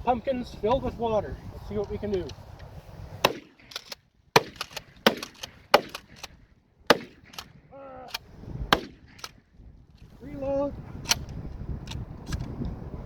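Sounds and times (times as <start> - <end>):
shotgun firing: 3.2 - 6.3, 6.9 - 7.6, 8.7 - 9.3
shotgun pump clacks: 3.2 - 9.4, 11.0 - 12.6.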